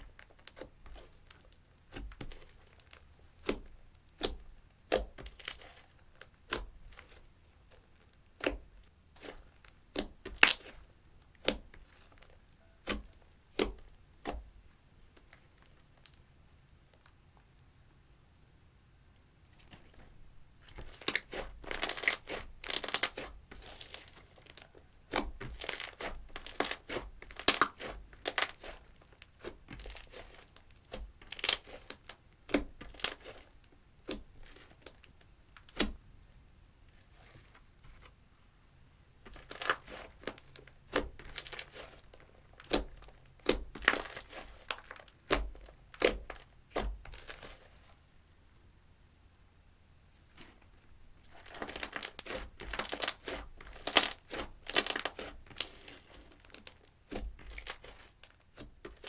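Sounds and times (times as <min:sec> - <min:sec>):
slime crackling and popping: 0:09.6 - 0:14.4, 0:20.7 - 0:35.8, 0:39.3 - 0:41.9, 0:42.5 - 0:47.6, 0:51.3 - 0:59.0.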